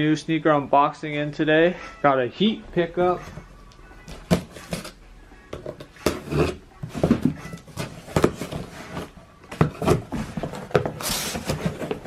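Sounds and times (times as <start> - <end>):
cardboard rubbing and scraping: 6.0 - 12.0.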